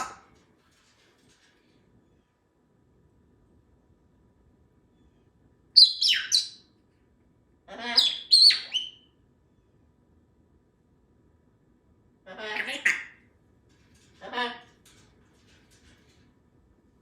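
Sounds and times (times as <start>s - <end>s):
parrot whistles and chirps: 5.8s - 6.6s, 7.9s - 9.1s.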